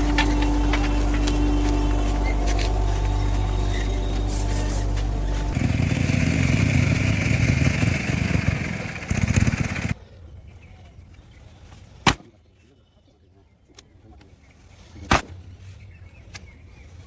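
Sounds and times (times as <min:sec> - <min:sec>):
loud machinery rattling: 0:00.0 - 0:10.0.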